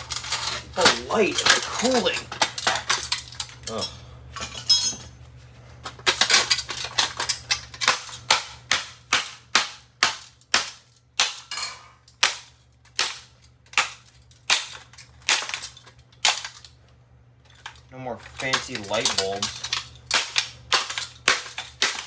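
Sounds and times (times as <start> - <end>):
blows smashing metal and glass: 0.0 - 5.0.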